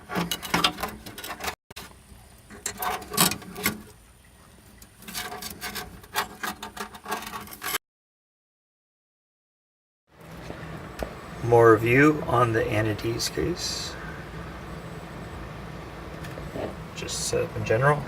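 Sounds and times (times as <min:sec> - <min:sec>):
computer parts clicking and scraping: 0:00.0 - 0:01.6, 0:05.0 - 0:07.8.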